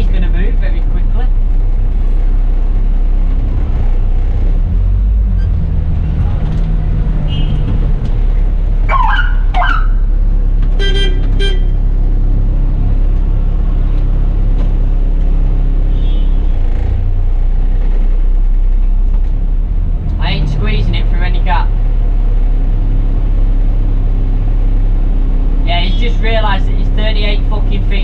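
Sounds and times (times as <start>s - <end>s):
bus diesel engine idling: 0.0s - 28.0s
bus horn toots: 7.2s - 7.8s, 10.8s - 11.8s, 15.9s - 16.6s.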